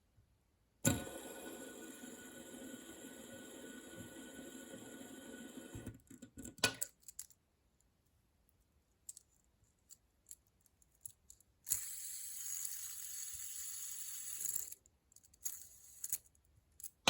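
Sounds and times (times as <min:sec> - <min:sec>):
fidget toy clicks: 0:11.7 - 0:14.8.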